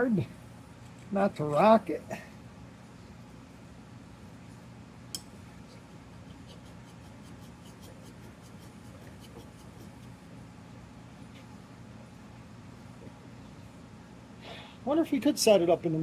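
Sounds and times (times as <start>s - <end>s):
steady low hum: 0.0s - 16.0s
hand file scratching metal: 6.2s - 10.1s.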